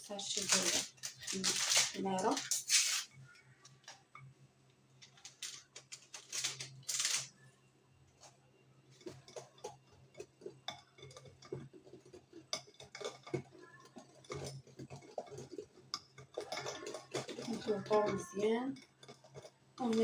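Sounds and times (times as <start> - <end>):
utensil scraping a bowl: 8.9 - 20.0.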